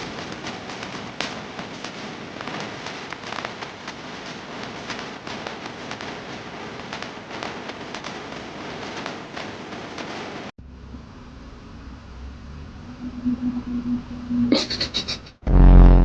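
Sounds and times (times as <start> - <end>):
crackling with sharp pops: 0.0 - 10.5.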